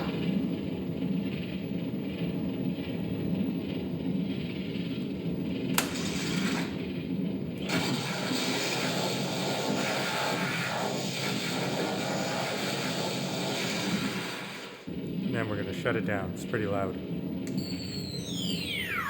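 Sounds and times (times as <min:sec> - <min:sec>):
low electronic hum: 0:00.0 - 0:08.2, 0:14.8 - 0:19.0.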